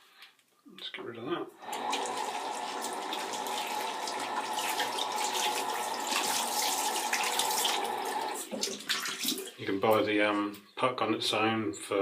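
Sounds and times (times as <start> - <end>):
water splashing: 1.6 - 9.6
tap running into a sink: 1.7 - 9.4.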